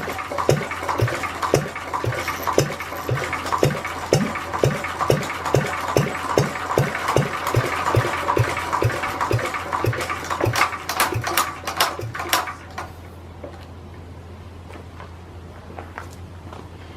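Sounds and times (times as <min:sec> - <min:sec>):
stationary engine thumping: 0:00.0 - 0:12.9.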